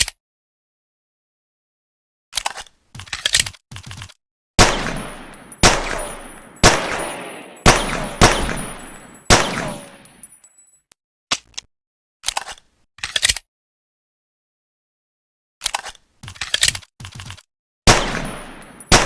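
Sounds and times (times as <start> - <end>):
pistol shots echoing: 4.6 - 10.3, 17.9 - 19.0.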